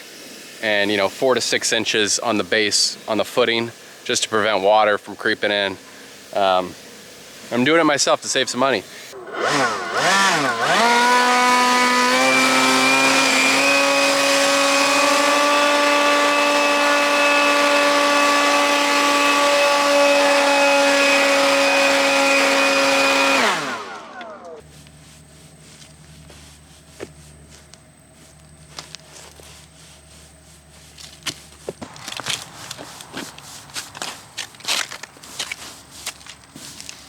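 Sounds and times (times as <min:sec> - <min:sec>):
small gas engine revving: 0:09.0 - 0:24.7, 0:31.2 - 0:35.8.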